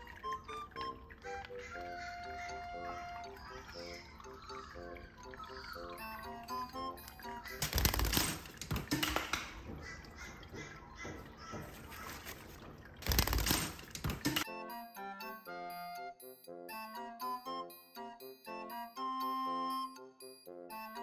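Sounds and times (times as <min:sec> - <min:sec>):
light background music: 0:00.0 - 0:21.0
bird splashing in water: 0:07.4 - 0:14.4.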